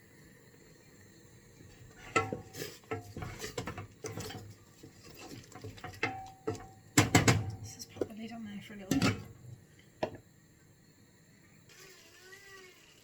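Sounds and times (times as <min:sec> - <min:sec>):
pan and utensils clattering: 0:01.9 - 0:08.2, 0:08.8 - 0:10.2.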